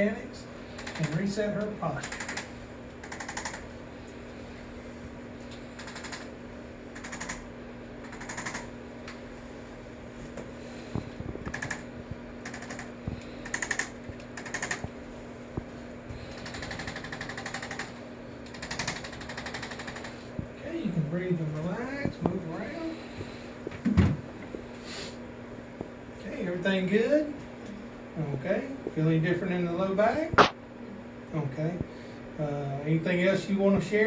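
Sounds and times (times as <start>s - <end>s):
steady low hum: 0.0s - 34.0s
rapid mechanical tapping: 0.7s - 3.8s, 5.5s - 9.2s, 10.9s - 15.0s, 15.6s - 20.6s.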